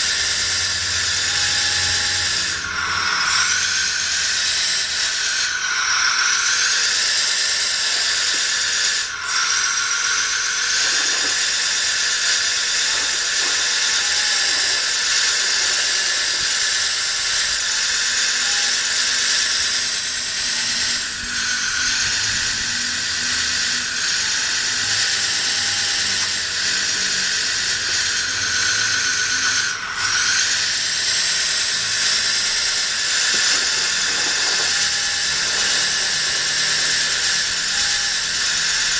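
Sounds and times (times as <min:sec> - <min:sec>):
small electric motor whining: 0:00.0 - 0:38.9.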